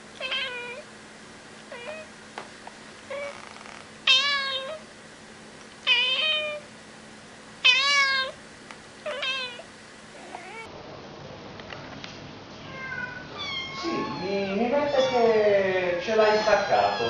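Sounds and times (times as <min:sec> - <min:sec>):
cat meowing: 0:00.2 - 0:00.8, 0:01.7 - 0:02.1, 0:03.1 - 0:04.8, 0:05.8 - 0:06.7, 0:07.6 - 0:08.4, 0:09.0 - 0:10.7, 0:12.6 - 0:15.4, 0:16.1 - 0:17.0.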